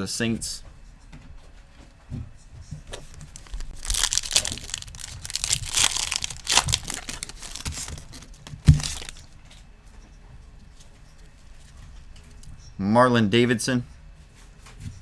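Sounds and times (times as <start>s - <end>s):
foil wrapper crinkling: 2.9s - 9.3s.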